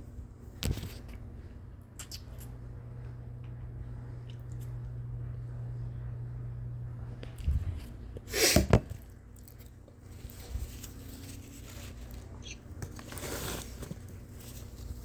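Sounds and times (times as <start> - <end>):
person sneezing: 8.3 - 8.7.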